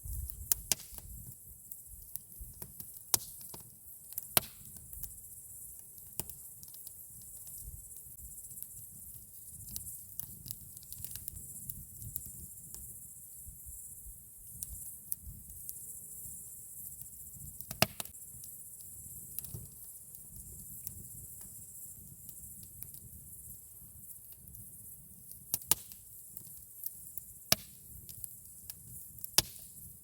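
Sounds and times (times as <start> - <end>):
low rumble of flames: 0.0 - 3.3
campfire crackling: 0.0 - 30.0.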